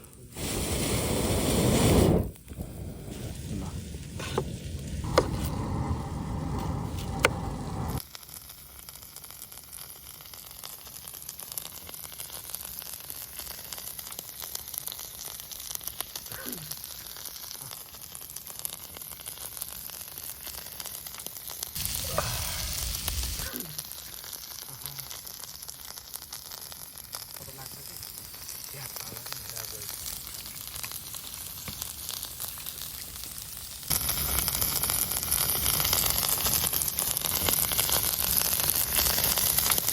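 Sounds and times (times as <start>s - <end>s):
food sizzling over campfire: 0.0s - 39.9s
sharp pops: 4.0s - 8.0s.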